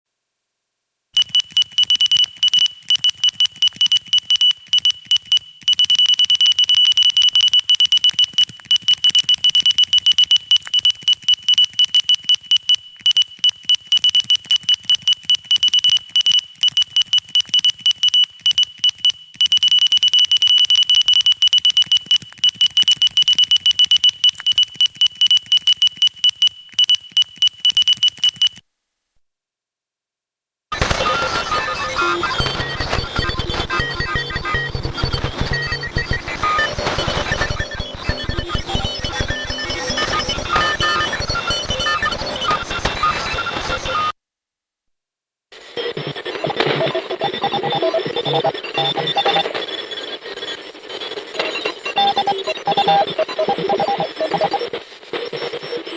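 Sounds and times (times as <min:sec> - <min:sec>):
faint static hiss: 0:00.1 - 0:01.1
morse code beeps: 0:01.2 - 0:28.6, 0:30.8 - 0:44.1, 0:45.9 - 0:50.6, 0:51.4 - 0:55.9.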